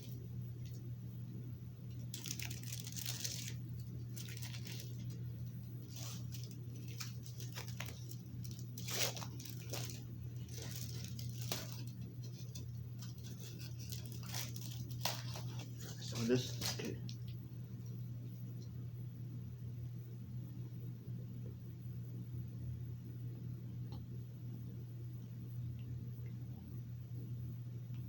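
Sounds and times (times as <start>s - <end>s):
steady low hum: 0.0s - 28.0s
wrapper crinkling and tearing: 1.9s - 17.0s.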